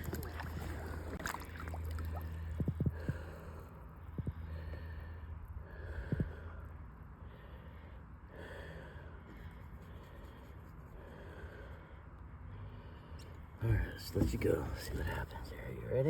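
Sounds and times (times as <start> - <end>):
low hum: 0.0 - 13.6
person breathing heavily: 2.0 - 13.2.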